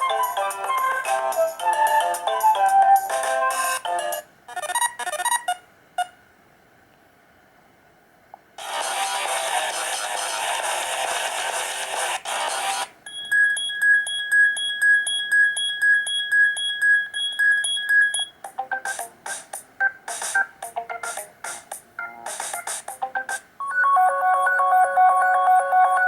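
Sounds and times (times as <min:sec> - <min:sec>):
chiming phone ringtone: 0:00.1 - 0:04.8, 0:23.1 - 0:26.0.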